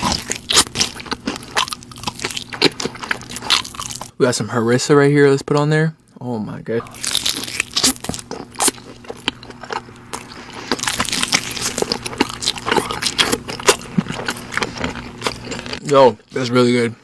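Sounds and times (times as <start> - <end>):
person chewing food: 0.0 - 4.2, 6.8 - 15.8.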